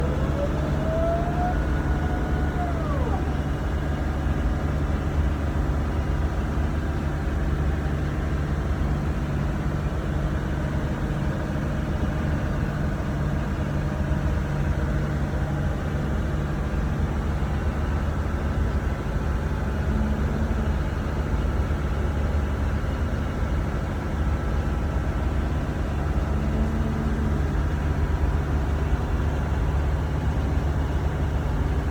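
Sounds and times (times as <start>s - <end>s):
rising and falling tone: 0.0s - 3.9s
boat engines droning: 0.0s - 9.2s, 15.0s - 31.9s.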